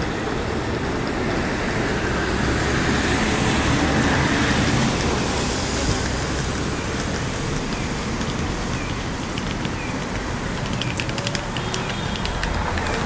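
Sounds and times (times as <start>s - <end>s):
car passing by: 0.0s - 9.4s
city street traffic: 0.0s - 13.0s.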